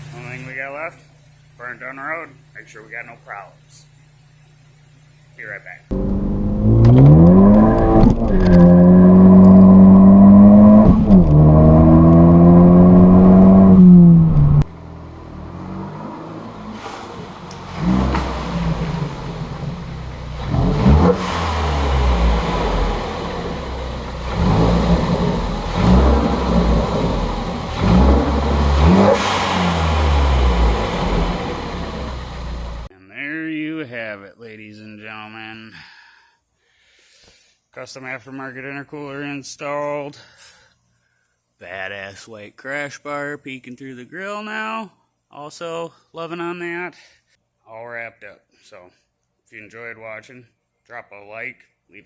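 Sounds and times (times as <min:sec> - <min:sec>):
car driving noise: 0:05.9 - 0:32.9
car engine accelerating: 0:05.9 - 0:32.9.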